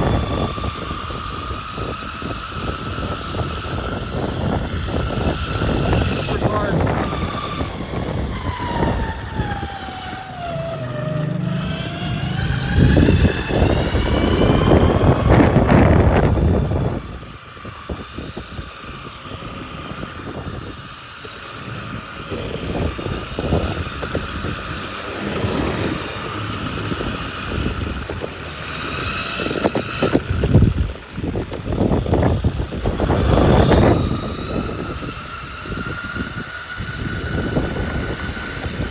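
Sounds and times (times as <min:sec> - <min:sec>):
electric motor whine: 0:00.0 - 0:38.9
wheels rumbling: 0:00.0 - 0:38.9
wind buffeting microphone: 0:00.0 - 0:38.9.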